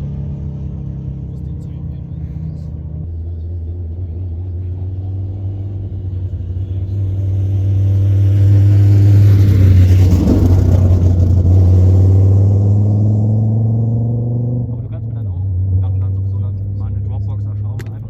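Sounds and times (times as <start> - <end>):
car passing by: 5.2 - 17.3.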